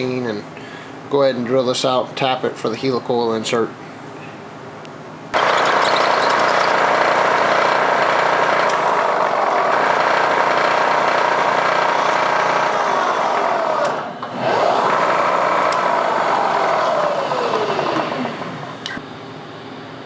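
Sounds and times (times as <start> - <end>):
drill drilling into metal: 5.4 - 19.0.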